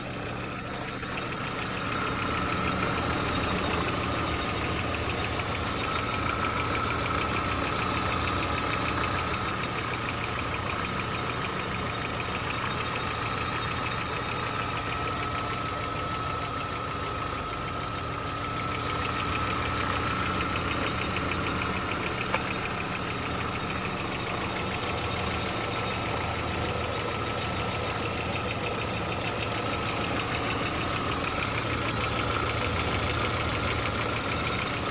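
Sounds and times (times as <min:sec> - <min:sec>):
car engine idling: 0:00.0 - 0:34.9
engine ticking knock: 0:00.0 - 0:34.9.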